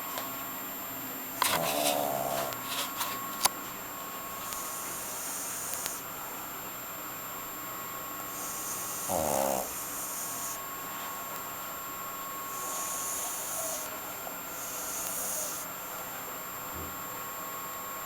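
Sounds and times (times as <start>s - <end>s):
dog snoring: 1.4s - 3.2s, 4.4s - 6.1s, 8.2s - 11.2s, 12.4s - 16.0s.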